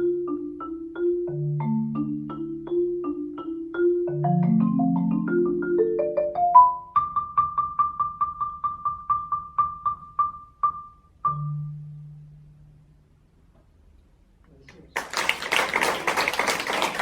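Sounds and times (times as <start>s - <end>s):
marimba-like mallet percussion: 0.0s - 12.8s.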